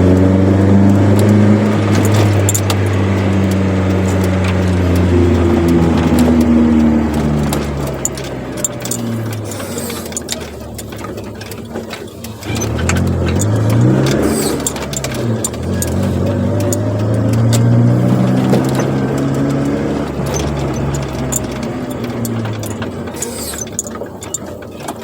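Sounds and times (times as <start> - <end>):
car engine accelerating: 0.0 - 25.0.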